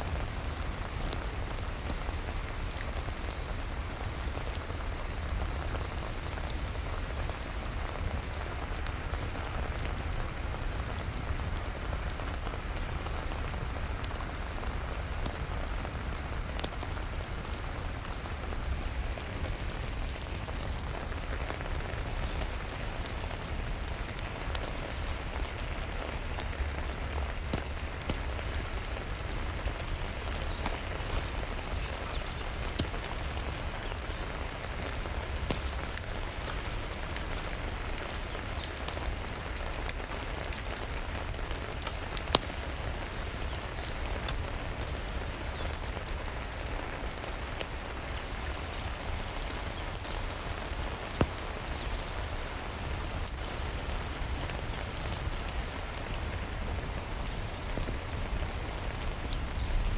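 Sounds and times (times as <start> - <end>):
rain falling: 0.0 - 59.9
sharp ticks and pops: 19.9 - 39.0, 39.9 - 44.7.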